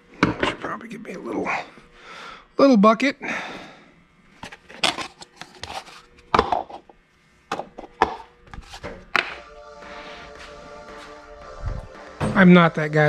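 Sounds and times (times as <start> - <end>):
hard objects knocking on workbench: 12.2 - 12.6.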